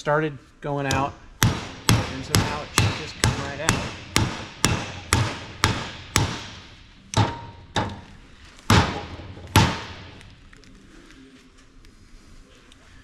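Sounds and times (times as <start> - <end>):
hammer striking metal nut: 0.8 - 10.3.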